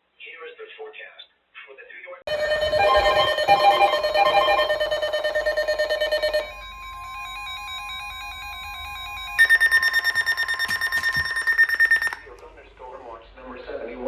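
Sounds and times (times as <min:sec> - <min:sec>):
electronic alert beeps: 0:02.3 - 0:12.4.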